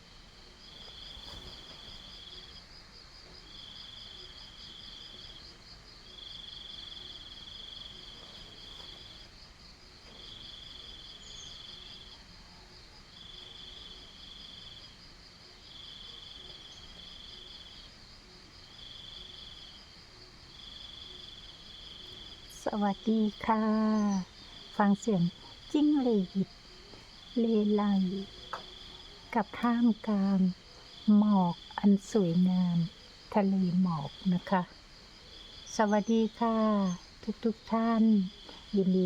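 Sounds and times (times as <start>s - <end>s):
insect pulsing trill: 0.0s - 15.0s
insect high buzzing calls: 0.4s - 14.9s.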